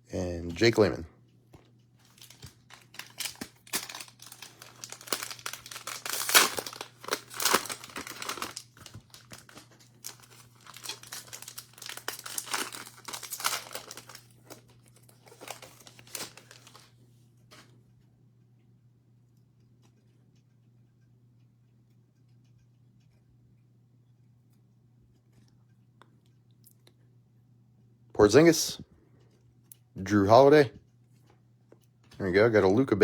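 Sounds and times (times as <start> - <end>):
plastic wrapper crinkling and tearing: 2.0 - 16.9.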